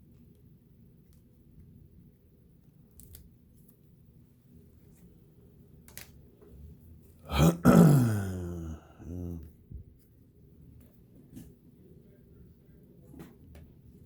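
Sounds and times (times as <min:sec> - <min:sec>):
man's throaty groan: 0:07.2 - 0:09.5.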